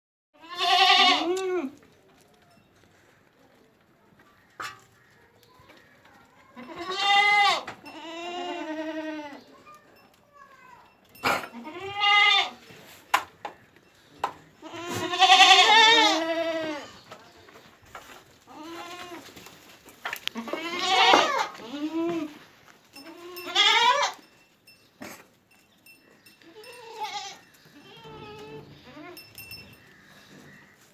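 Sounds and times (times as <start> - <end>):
goat bleating: 0.4 - 1.8, 6.5 - 9.4, 11.4 - 12.6, 14.6 - 17.0, 18.5 - 19.3, 20.3 - 22.4, 23.0 - 24.2, 26.5 - 29.5.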